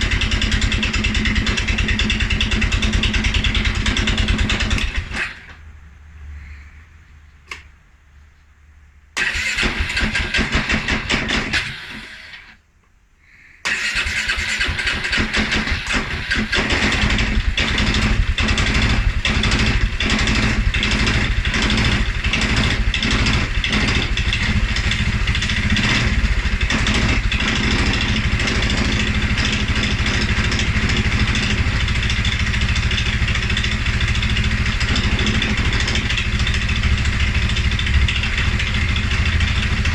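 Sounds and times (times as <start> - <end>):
engine starting and idling roughly: 0.0 - 5.6, 9.2 - 12.6, 13.6 - 39.9.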